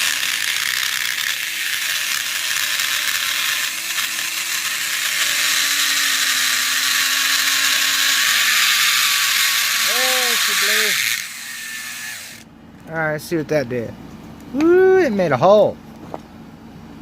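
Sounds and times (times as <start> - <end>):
power drill boring through metal: 0.0 - 12.4.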